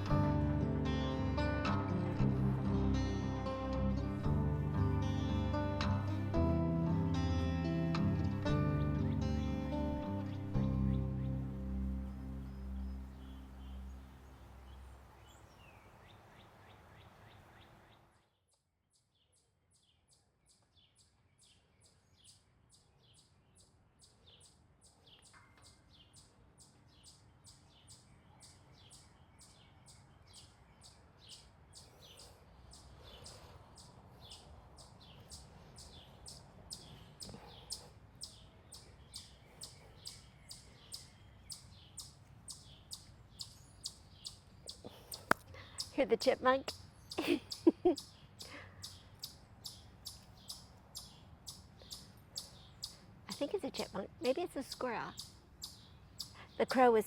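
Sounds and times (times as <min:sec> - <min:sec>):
music: 0:00.0 - 0:13.9
chipmunk chip call: 0:34.3 - 0:57.0.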